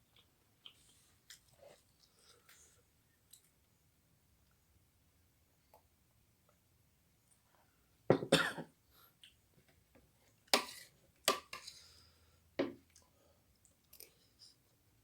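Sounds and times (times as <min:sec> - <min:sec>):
person coughing: 0:08.1 - 0:08.7.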